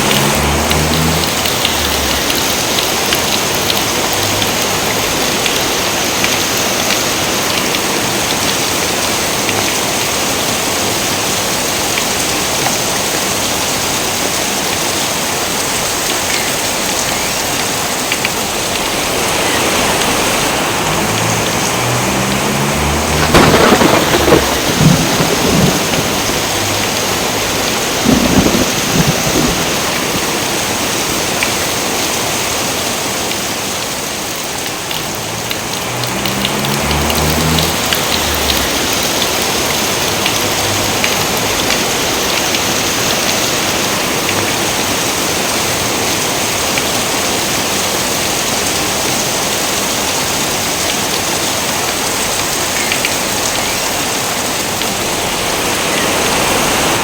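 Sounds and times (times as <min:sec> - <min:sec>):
heavy rain pouring: 0:00.0 - 0:57.0
low rolls of thunder: 0:20.9 - 0:30.7, 0:36.0 - 0:39.3.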